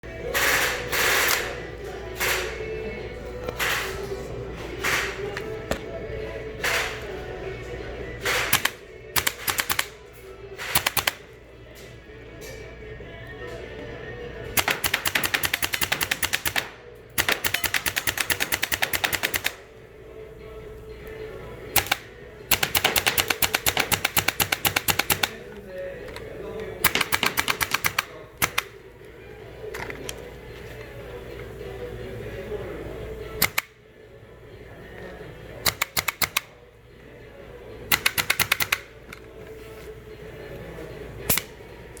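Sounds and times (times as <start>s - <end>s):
airsoft gun full-auto bursts: 8.4s - 9.9s, 14.6s - 19.6s, 21.8s - 25.3s.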